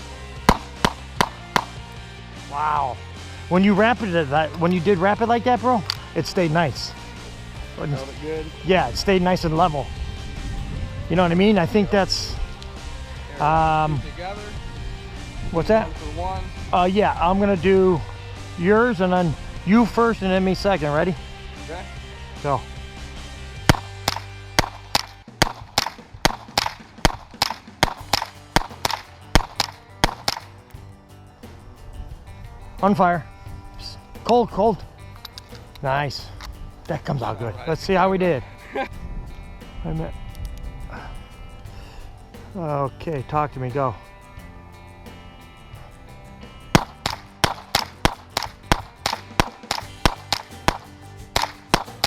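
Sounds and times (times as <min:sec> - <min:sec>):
background music: 0:00.0 - 0:52.0
rapid rifle gunshots: 0:00.5 - 0:01.8, 0:23.7 - 0:30.5, 0:46.8 - 0:52.0.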